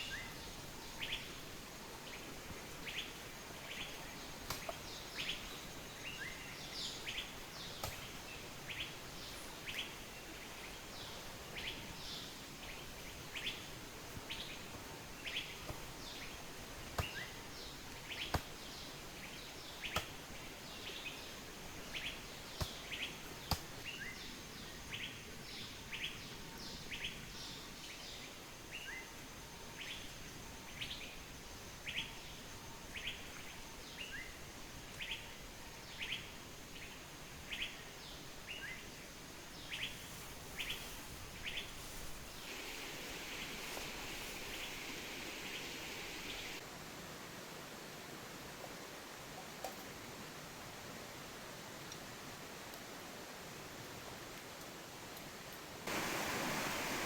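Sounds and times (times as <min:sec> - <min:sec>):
small birds chirping: 0:00.0 - 0:29.1, 0:31.8 - 0:46.6
background hiss: 0:00.0 - 0:57.0.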